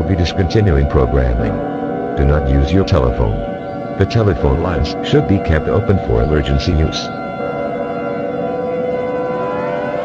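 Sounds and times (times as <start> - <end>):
siren wailing: 0.0 - 10.0.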